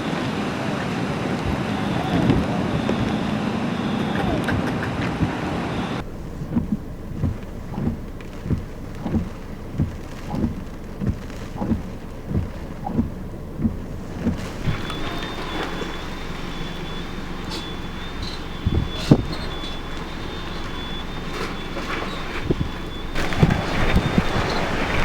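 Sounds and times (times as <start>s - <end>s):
rain: 0.0s - 25.0s
wind: 0.0s - 25.0s
regular low thump: 6.0s - 24.9s.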